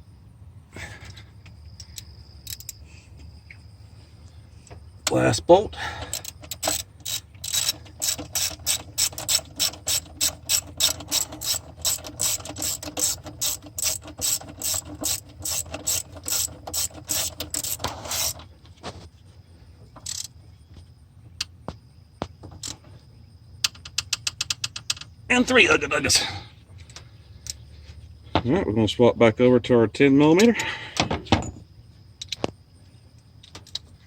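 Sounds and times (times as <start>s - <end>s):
ratchet wrench clicking: 1.8s - 2.8s, 6.1s - 18.4s, 20.0s - 20.3s.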